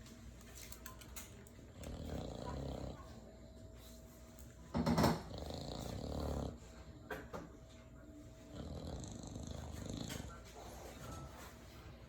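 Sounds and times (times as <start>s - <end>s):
dog snoring: 1.7s - 3.1s, 4.9s - 6.7s, 8.5s - 10.4s.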